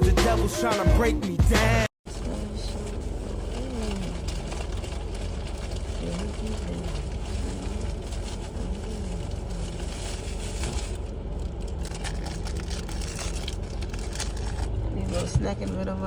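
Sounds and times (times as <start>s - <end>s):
car engine rumble inside cabin: 1.8s - 16.0s.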